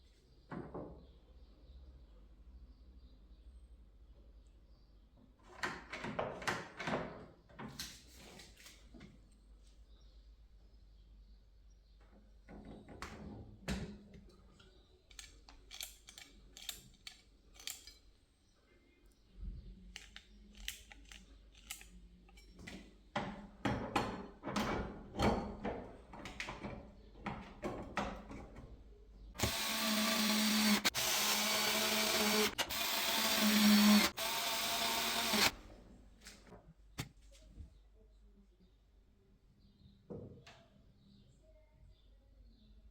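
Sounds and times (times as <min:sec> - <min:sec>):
small power tool motor: 0:29.4 - 0:35.6.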